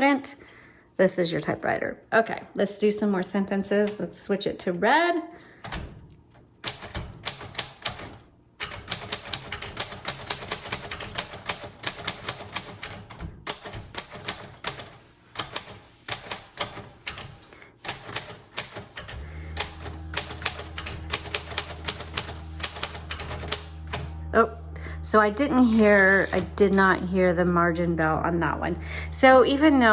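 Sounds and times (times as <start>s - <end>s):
manual typewriter typing: 5.6s - 24.2s, 25.8s - 26.8s
low steady hum: 19.0s - 29.9s.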